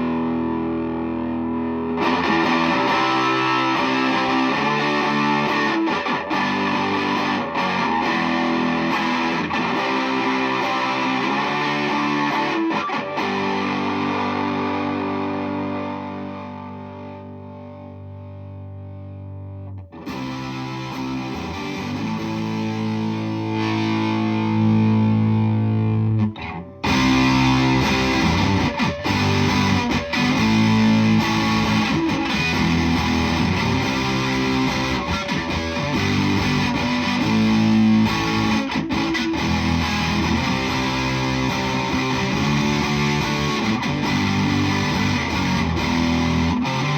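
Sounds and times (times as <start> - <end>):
distorted electric guitar: 0.0 - 46.9.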